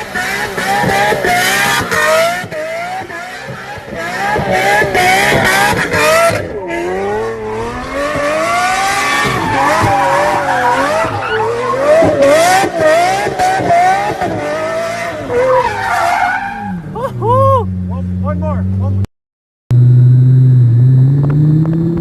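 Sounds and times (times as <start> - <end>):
car engine running: 19.7 - 22.0.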